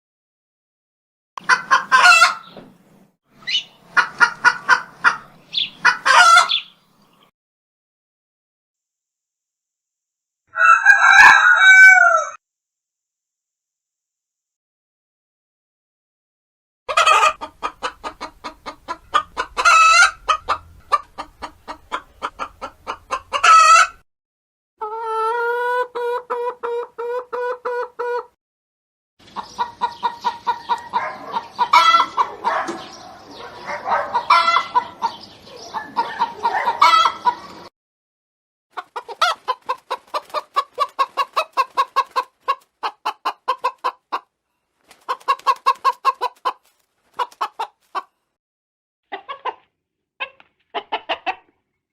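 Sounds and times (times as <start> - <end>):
hens clucking and cackling: 1.4 - 2.6, 3.5 - 6.7, 10.6 - 12.4, 16.9 - 24.0, 24.8 - 28.4, 29.2 - 37.7, 38.8 - 44.3, 44.9 - 48.1, 49.1 - 51.6.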